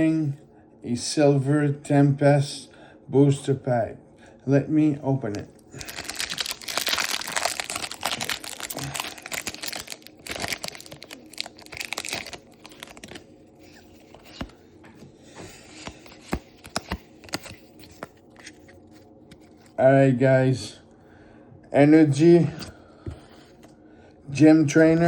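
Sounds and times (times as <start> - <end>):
foil wrapper tearing and crinkling: 5.8 - 13.3.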